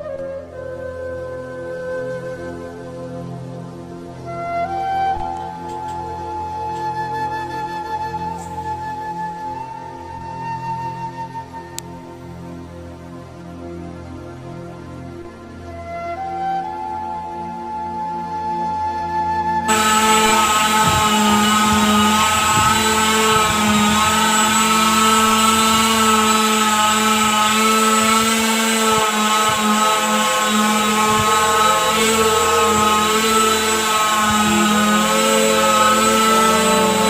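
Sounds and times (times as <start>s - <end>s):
motor running steadily: 19.7s - 37.0s.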